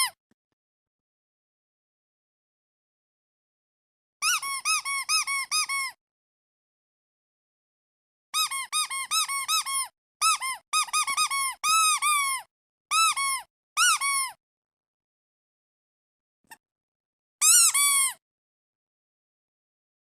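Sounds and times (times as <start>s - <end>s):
squeaky duck toy squeaking: 4.2s - 6.0s, 8.4s - 14.4s, 17.4s - 18.2s.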